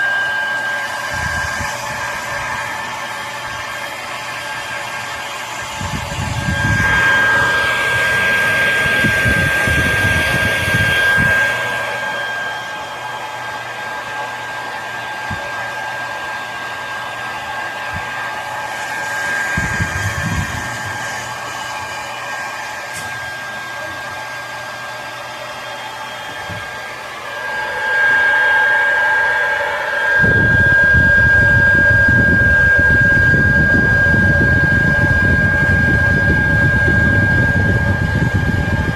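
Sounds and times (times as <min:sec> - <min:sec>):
hair dryer blowing: 0:00.0 - 0:38.9
wind rumble on microphone: 0:01.1 - 0:02.8, 0:05.6 - 0:11.4, 0:19.4 - 0:21.2, 0:30.2 - 0:38.9.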